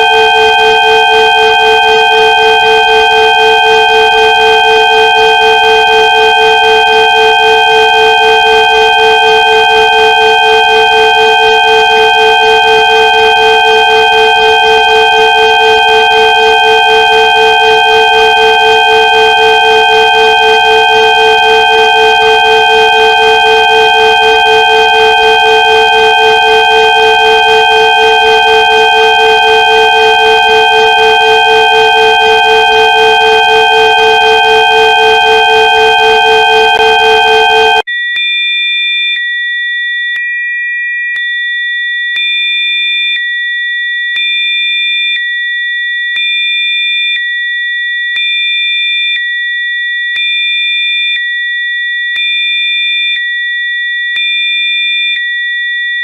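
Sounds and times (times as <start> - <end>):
steady electronic tones: 24.1 - 37.8.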